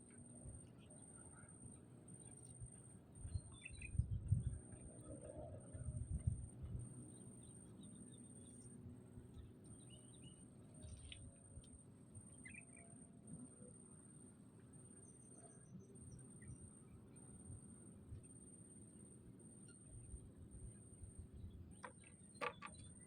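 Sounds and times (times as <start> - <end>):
bird chirps: 3.2 - 4.4, 12.3 - 12.9.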